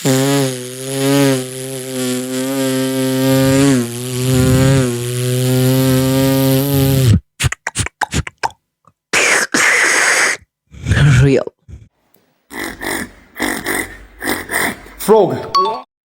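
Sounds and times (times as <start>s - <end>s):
vocal buzzing hum imitating fly: 0.0s - 8.6s, 9.2s - 11.9s, 12.5s - 15.0s
mouth clicks: 6.8s - 11.9s, 12.5s - 15.1s.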